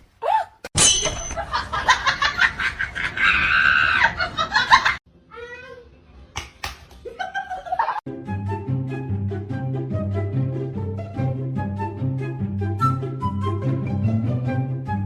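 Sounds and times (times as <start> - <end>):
people laughing: 1.4 - 5.0, 7.0 - 8.0.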